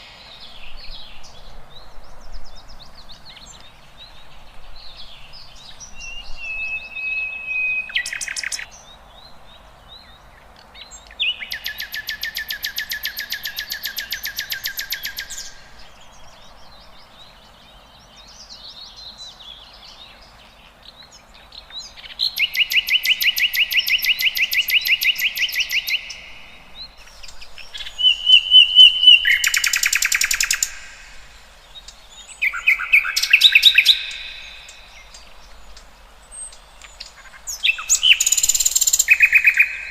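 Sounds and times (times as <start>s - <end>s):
songbirds trilling: 0.0s - 39.9s
bird whistled notes and calls: 5.7s - 8.7s, 21.9s - 35.3s, 36.3s - 39.9s.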